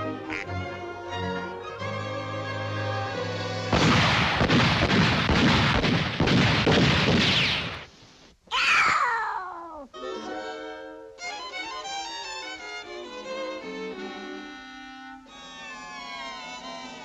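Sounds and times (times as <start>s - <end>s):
orchestral strings: 0.0s - 4.0s, 10.0s - 17.0s
cartoon shotgun blasts and explosions: 3.7s - 7.9s.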